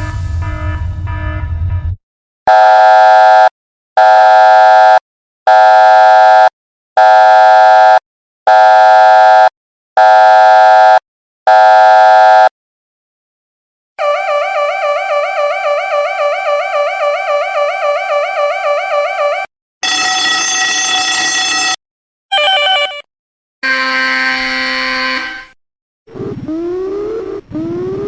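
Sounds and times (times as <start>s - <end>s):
alarm horn blasts: 0.0s - 12.5s, 14.0s - 25.6s
lower-pitched sound: 26.1s - 28.0s.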